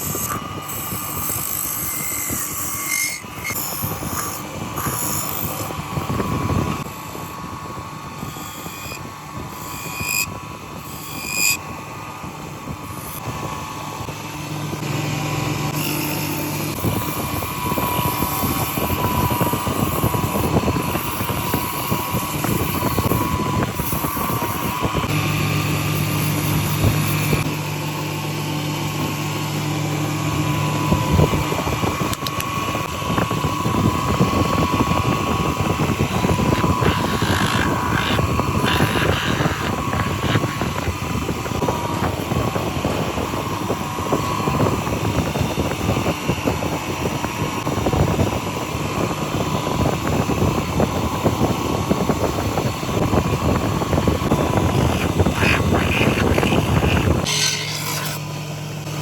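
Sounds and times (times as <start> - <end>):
power tool scraping wood: 0.0 - 7.4, 33.7 - 44.6, 53.4 - 58.5.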